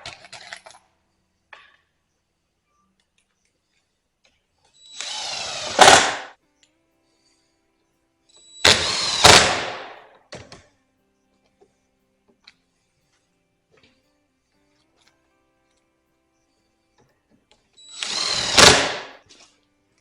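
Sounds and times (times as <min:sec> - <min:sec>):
power tool bursts: 0:04.8 - 0:06.4, 0:08.4 - 0:10.6, 0:17.8 - 0:19.4.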